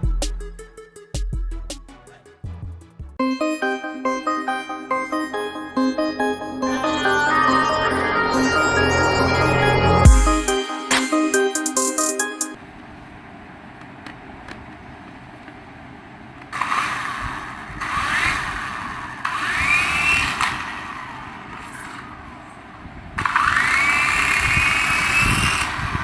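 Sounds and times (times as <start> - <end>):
toy electric motor whining: 16.6 - 22.1, 23.2 - 26.0.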